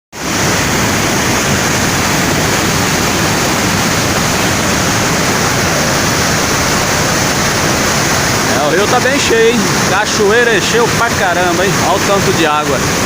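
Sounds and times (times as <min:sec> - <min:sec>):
waterfall rushing: 0:00.2 - 0:13.0.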